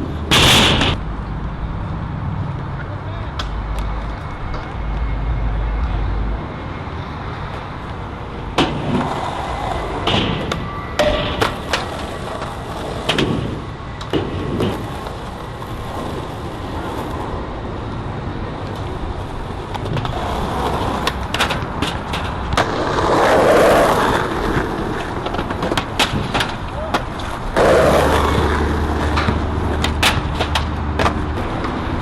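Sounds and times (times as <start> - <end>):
skateboard clacks: 0.0 - 1.0, 7.9 - 17.4, 18.6 - 32.0
skateboard wheels rolling: 0.0 - 32.0.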